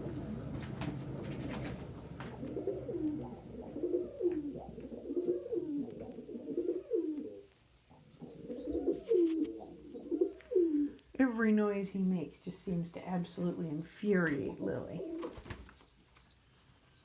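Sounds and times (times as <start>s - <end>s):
pigeon cooing: 0.0s - 11.0s.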